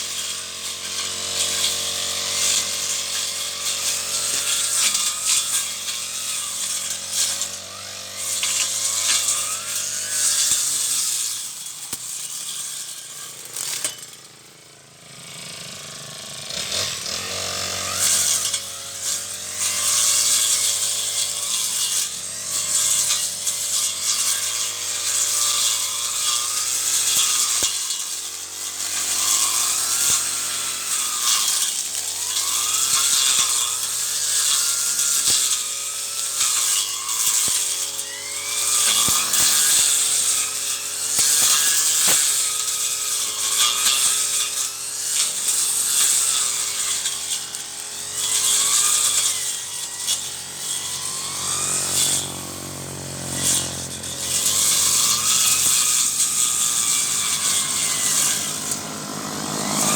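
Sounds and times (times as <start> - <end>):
brush cutter engine running: 0.0 - 59.9.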